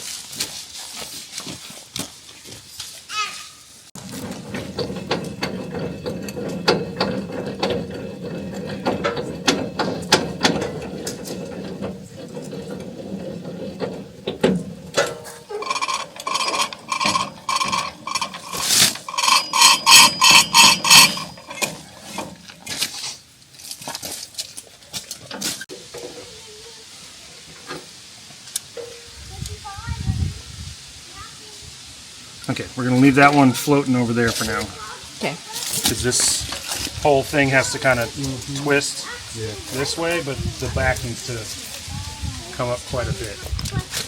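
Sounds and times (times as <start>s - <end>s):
ratchet wrench clicking: 15.5s - 21.8s.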